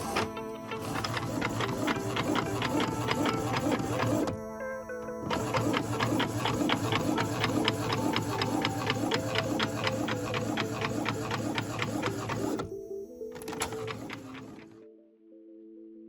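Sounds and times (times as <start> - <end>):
inkjet printer ticking: 0.0 - 4.4, 5.2 - 12.8, 13.4 - 14.8
printer low hum: 0.0 - 14.8.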